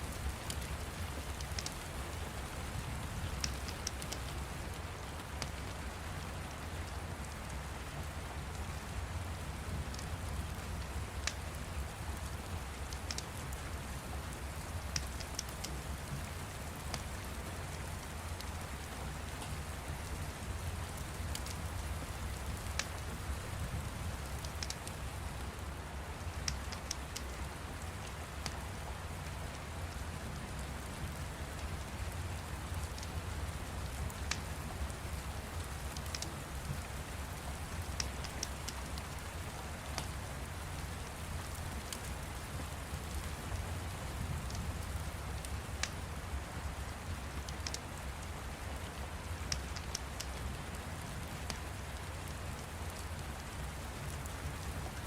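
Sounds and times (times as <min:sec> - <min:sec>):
steady rain: 0:00.0 - 0:55.0
fire crackling: 0:31.5 - 0:54.6.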